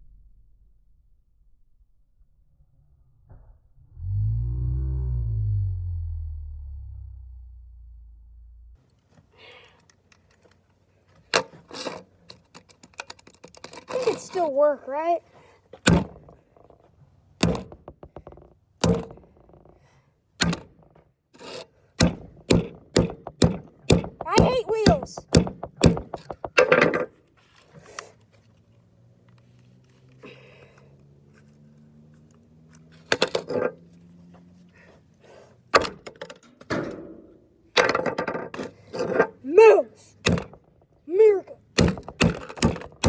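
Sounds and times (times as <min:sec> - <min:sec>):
plastic mouse clattering impacts: 0:15.8 - 0:16.7, 0:17.4 - 0:19.7, 0:41.8 - 0:43.0.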